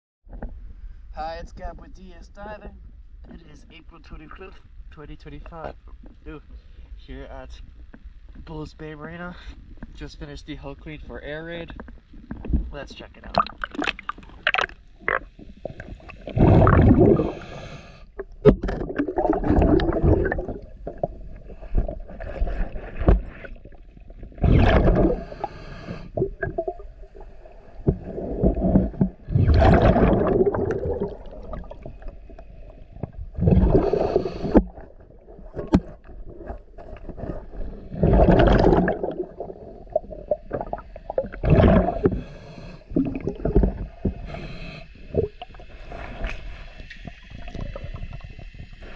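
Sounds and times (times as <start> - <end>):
exhaled bubbles gushing underwater: 12.3 - 44.4, 47.0 - 48.9
hissing regulator breaths: 17.1 - 18.2, 25.0 - 26.3, 33.7 - 34.8, 41.9 - 43.0, 43.9 - 48.9.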